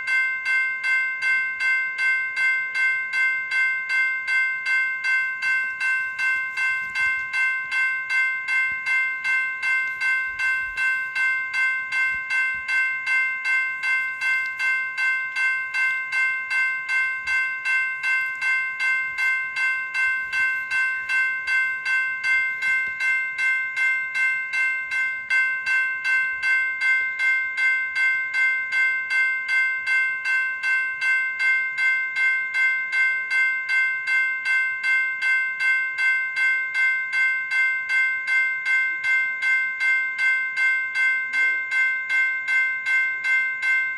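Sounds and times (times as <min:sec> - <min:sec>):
electronic crossing bell ringing: 0:00.0 - 0:43.9.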